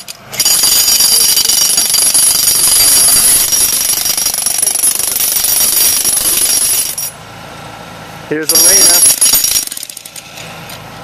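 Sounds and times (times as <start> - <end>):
jackhammer hammering: 0.0 - 7.1, 8.5 - 10.2
high ringing whine: 0.3 - 7.3, 8.3 - 9.7.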